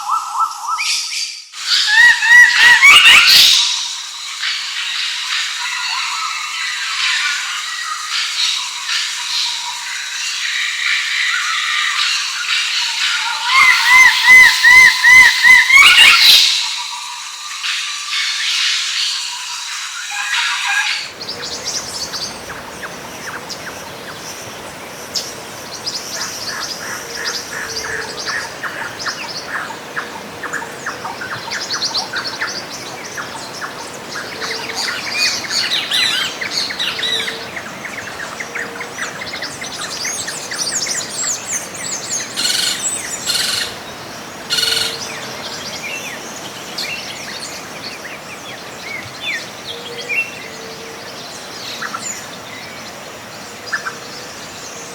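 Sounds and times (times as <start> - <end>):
background hiss: 11.9 - 20.2, 20.9 - 54.9
birds chirping: 12.6 - 17.0, 20.9 - 54.9.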